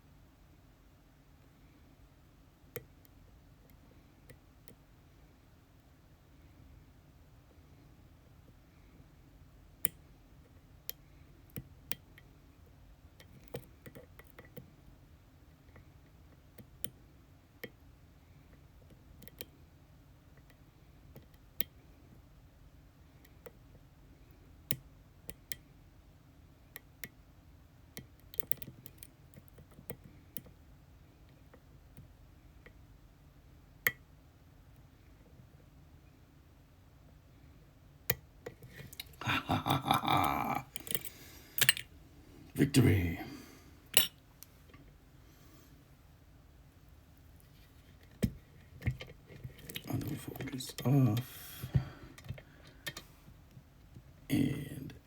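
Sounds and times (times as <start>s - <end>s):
lock pick metal clicks: 40.7s - 41.9s.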